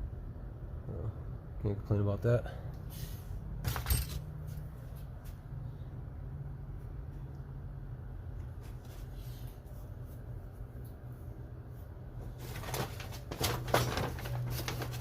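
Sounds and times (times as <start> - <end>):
tools and packaging rattling: 3.6 - 4.6, 12.2 - 15.0.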